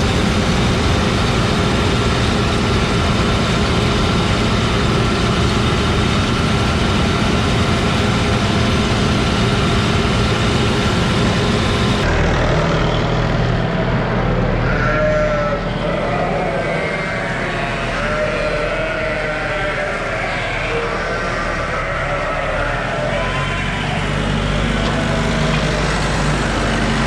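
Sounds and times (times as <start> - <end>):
low hum: 0.0 - 14.7
heavy machinery engine running: 0.0 - 27.0
animal calls: 14.6 - 27.0.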